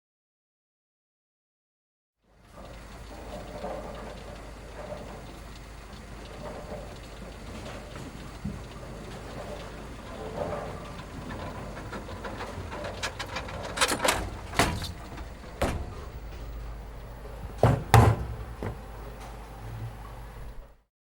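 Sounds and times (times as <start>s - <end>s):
steady low hum: 2.4s - 20.8s
sharp knocks and bangs: 13.1s - 16.6s, 17.4s - 18.9s.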